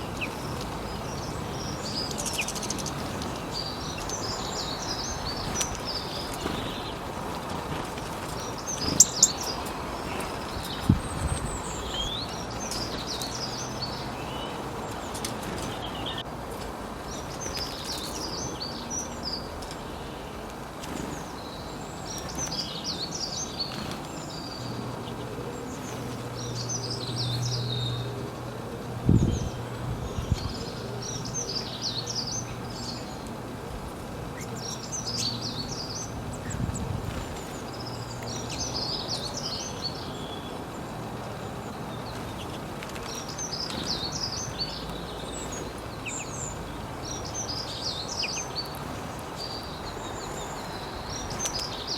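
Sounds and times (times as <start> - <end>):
outdoor background noise: 0.0 - 51.9
songbird twittering: 8.4 - 16.2.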